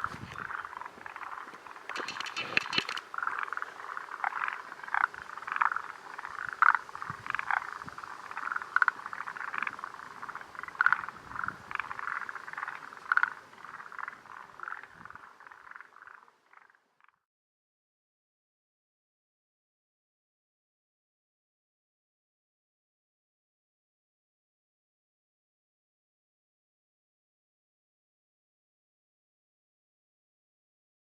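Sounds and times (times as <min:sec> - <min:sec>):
frog chorus: 0:00.0 - 0:17.3.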